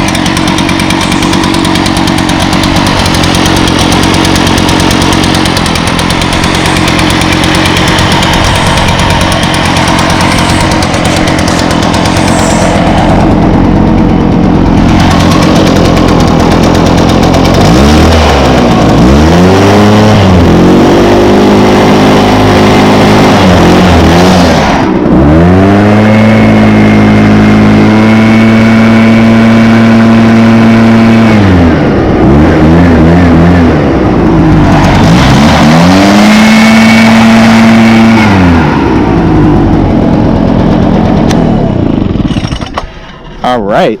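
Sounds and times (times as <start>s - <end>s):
leaf blower engine revving: 0.0s - 43.8s.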